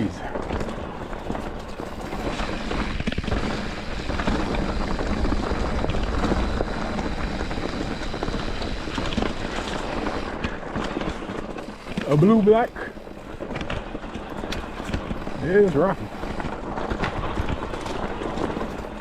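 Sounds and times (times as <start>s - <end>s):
bike rattling over rocks: 0.0s - 19.0s
wind buffeting microphone: 0.0s - 19.0s.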